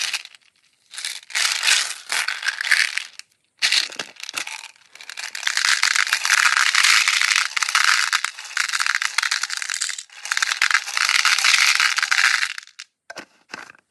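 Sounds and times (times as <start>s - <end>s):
tiny beads pouring and rattling: 0.0s - 12.8s.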